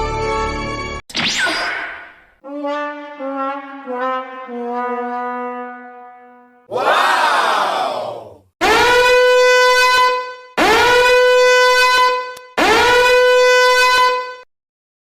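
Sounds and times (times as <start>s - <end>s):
buzzing alarm horn: 2.4s - 6.7s, 8.6s - 14.5s.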